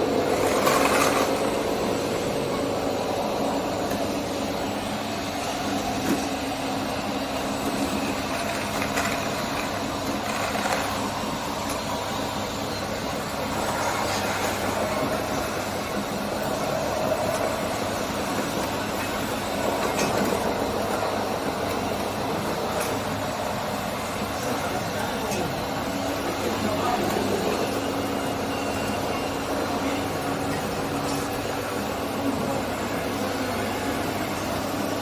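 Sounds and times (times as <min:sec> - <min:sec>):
toy vehicles mechanical running: 0:00.0 - 0:04.2, 0:05.4 - 0:35.0.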